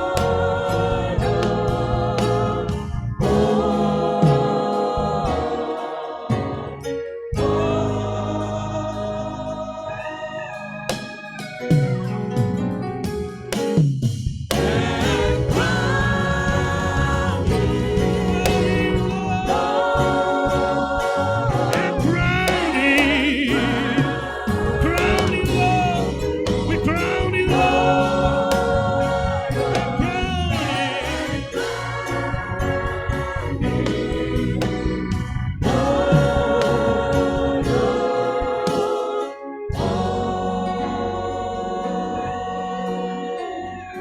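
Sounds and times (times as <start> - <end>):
choir singing a hymn: 0.0 - 11.0, 14.5 - 44.0
organ and keyboard: 0.0 - 44.0.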